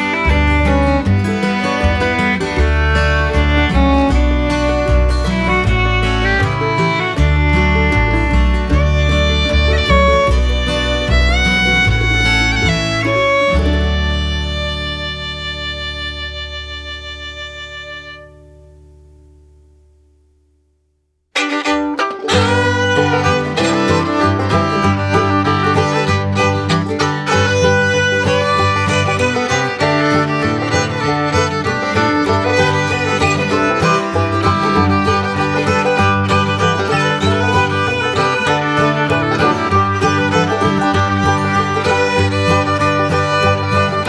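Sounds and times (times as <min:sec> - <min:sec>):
repeating bass line: 0:00.0 - 0:15.2.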